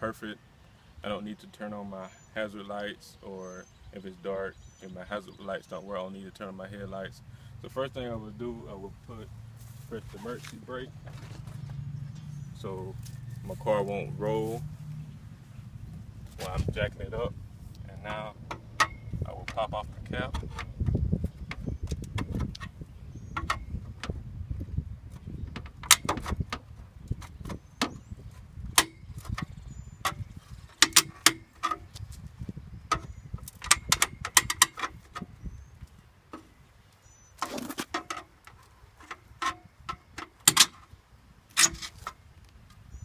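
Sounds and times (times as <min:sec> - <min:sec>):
low background rumble: 0:06.6 - 0:30.7
metal clicks taps and scrapes: 0:17.7 - 0:24.2, 0:25.1 - 0:32.2, 0:32.9 - 0:36.5, 0:37.4 - 0:42.8.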